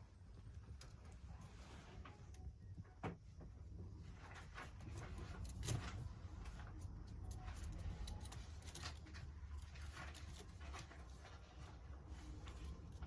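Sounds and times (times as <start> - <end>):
low steady hum: 0.0 - 13.0
kittens scrambling and playing: 3.3 - 13.0.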